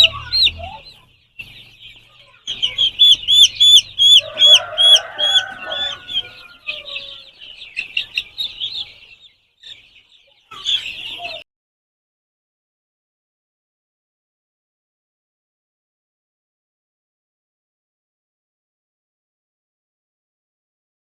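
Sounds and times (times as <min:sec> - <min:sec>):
low chirring call: 0:00.0 - 0:09.0
chicks peeping: 0:00.0 - 0:11.4.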